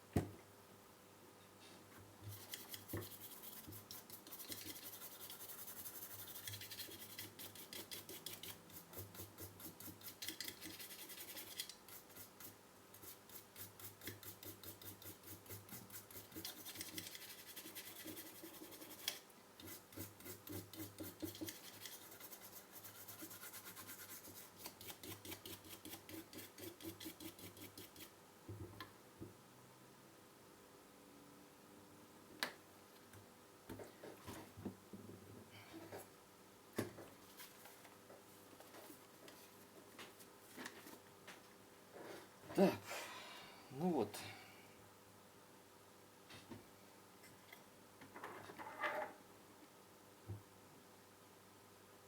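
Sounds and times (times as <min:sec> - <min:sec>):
brush scrubbing circuit board: 0:02.3 - 0:28.1.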